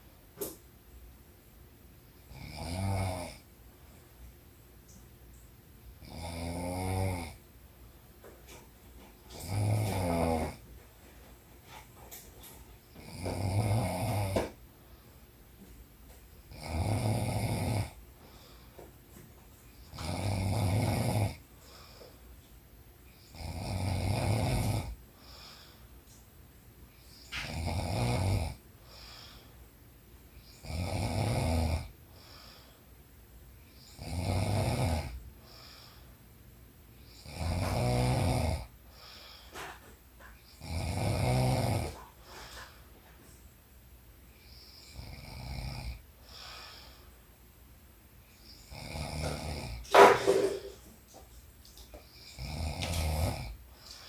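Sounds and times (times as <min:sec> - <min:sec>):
woman snoring: 0:02.3 - 0:03.4, 0:06.0 - 0:07.4, 0:09.3 - 0:10.6, 0:13.0 - 0:14.6, 0:16.5 - 0:18.0, 0:19.8 - 0:21.8, 0:23.2 - 0:25.6, 0:27.1 - 0:29.4, 0:30.4 - 0:32.6, 0:33.7 - 0:35.7, 0:37.0 - 0:39.7, 0:40.4 - 0:42.7, 0:44.4 - 0:47.0, 0:48.4 - 0:50.8, 0:52.1 - 0:54.0
quiet breathing: 0:03.1 - 0:54.0.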